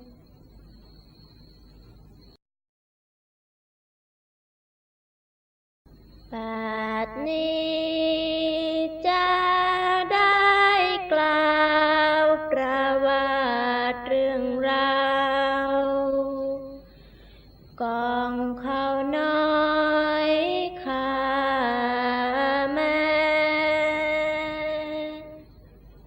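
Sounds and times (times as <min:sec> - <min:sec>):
women singing unaccompanied chant: 0:06.3 - 0:16.9, 0:17.8 - 0:25.5
singer breaths: 0:16.8 - 0:17.7.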